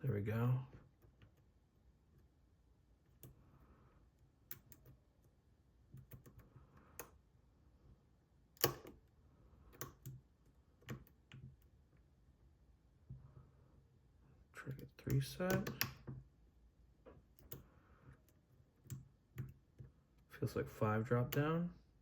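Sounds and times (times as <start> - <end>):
lock pick clicking in padlock: 8.6 - 9.0.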